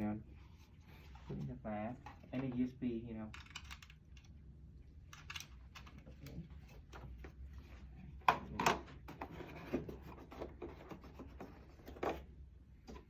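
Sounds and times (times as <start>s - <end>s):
hands handling keyboard and mouse: 3.3s - 4.4s, 5.1s - 7.4s.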